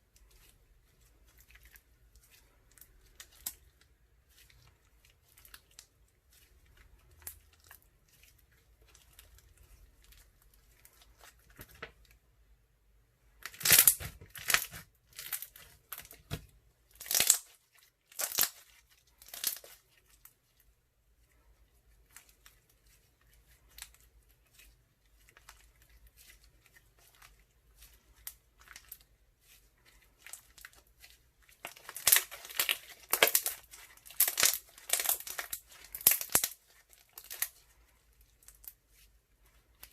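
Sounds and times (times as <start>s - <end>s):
slime crackling and popping: 13.4s - 20.0s, 24.6s - 37.7s.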